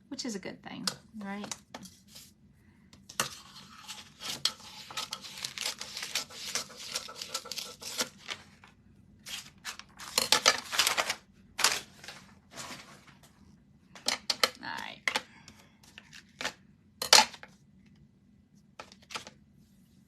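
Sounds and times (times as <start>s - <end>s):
craft material rustling and tearing: 3.5s - 13.2s.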